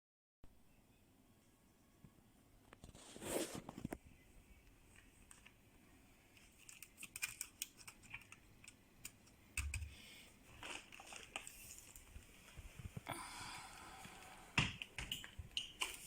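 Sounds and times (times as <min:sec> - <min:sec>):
small objects clicking and tapping: 0:06.3 - 0:10.0, 0:14.6 - 0:16.0.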